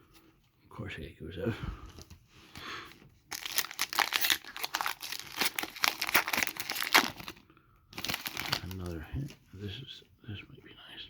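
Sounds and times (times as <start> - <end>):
foil wrapper crinkling: 3.3 - 7.4, 8.0 - 9.1.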